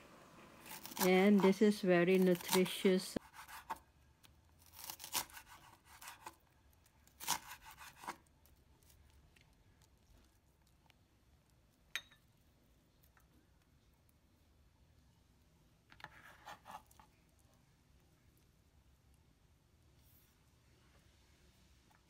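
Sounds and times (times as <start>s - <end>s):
knife slicing on cutting board: 2.3s - 3.8s, 4.8s - 6.4s, 7.2s - 8.2s.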